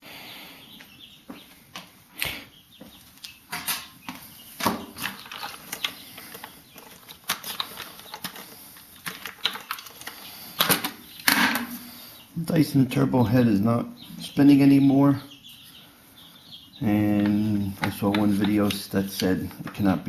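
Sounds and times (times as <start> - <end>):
objects clicking and rustling: 4.6 - 11.8.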